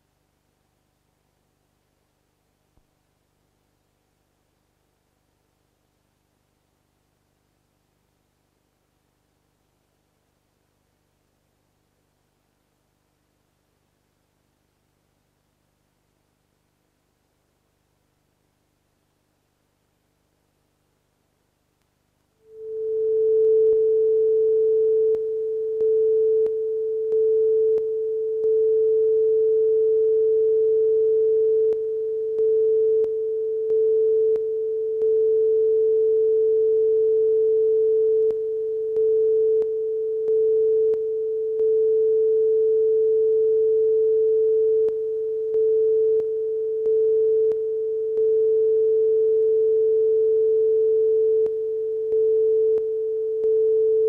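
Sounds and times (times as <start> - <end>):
steady mid-pitched test tone: 22.4 - 54.0.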